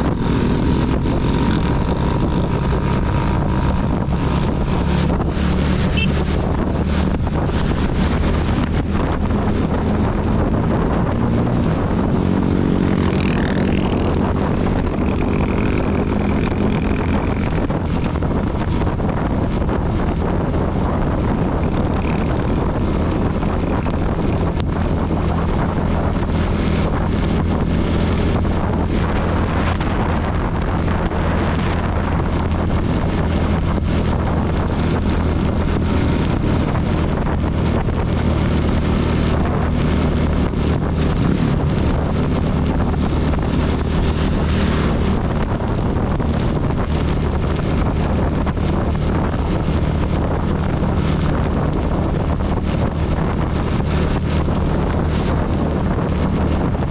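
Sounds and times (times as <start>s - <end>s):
motorcycle engine running: 0.0s - 56.9s
wind rushing on microphone: 0.0s - 56.9s
heavy rain: 26.2s - 56.9s.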